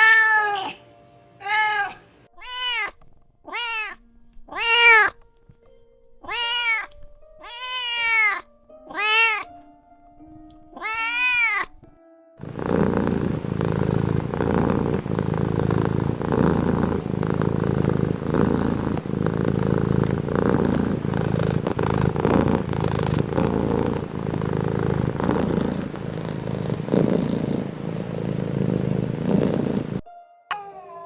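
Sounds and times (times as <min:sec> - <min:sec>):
cat purring: 0:12.4 - 0:30.0.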